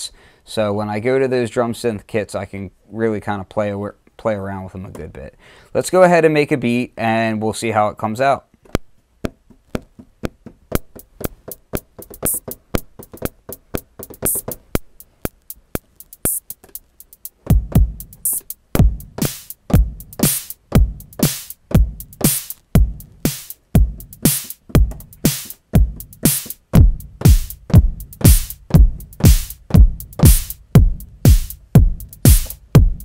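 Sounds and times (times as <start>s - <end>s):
ticking hi-hats and percussion: 9.2s - 33.0s
deep kick drum: 17.5s - 18.2s, 18.8s - 33.0s.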